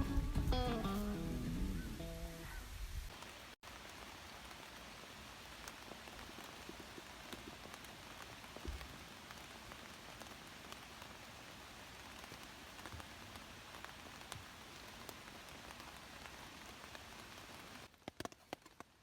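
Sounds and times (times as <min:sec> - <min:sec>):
guitar music: 0:00.0 - 0:02.5
light rain hissing: 0:00.0 - 0:18.0.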